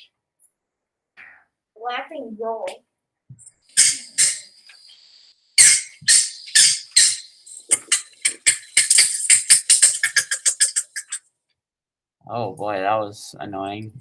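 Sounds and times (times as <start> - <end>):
heron calls: 3.8 - 5.0, 5.6 - 11.2.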